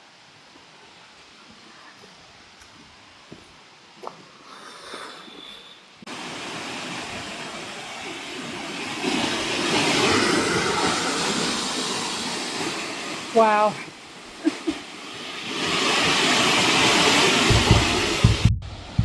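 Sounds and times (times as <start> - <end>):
waterfall roaring: 6.1 - 19.0.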